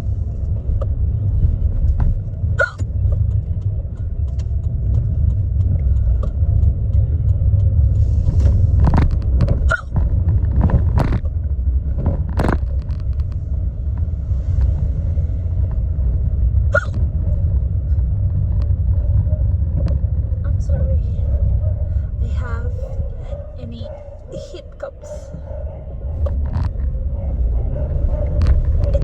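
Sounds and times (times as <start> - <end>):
road noise rumble: 0.0 - 29.0
woman hiccuping: 9.7 - 9.9, 16.8 - 17.0.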